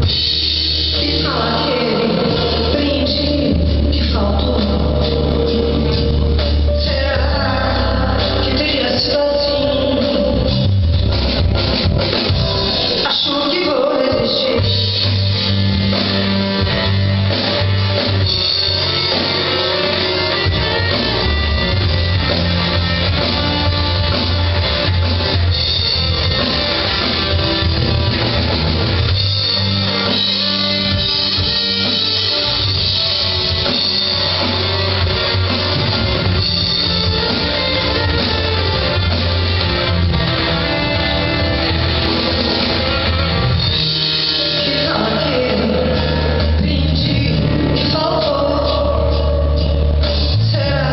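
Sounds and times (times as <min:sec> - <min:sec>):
pop-rock band playing: 0:00.0 - 0:50.9
person singing: 0:00.8 - 0:10.8, 0:12.8 - 0:15.3, 0:44.3 - 0:50.9.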